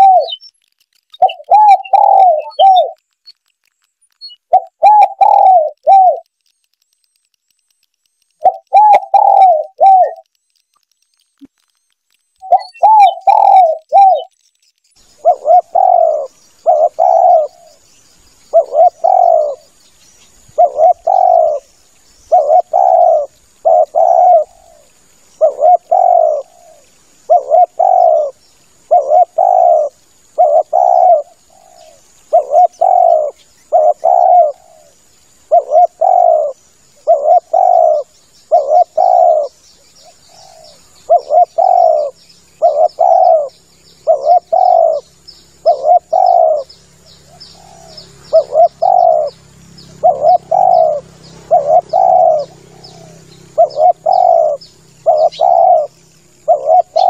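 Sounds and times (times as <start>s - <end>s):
dove cooing: 0.0s - 0.4s, 1.0s - 3.0s, 4.3s - 6.3s, 8.4s - 10.3s, 12.4s - 14.4s, 15.0s - 17.9s, 18.5s - 19.7s, 20.5s - 21.7s, 22.3s - 57.0s
faint high chirping: 0.0s - 57.0s.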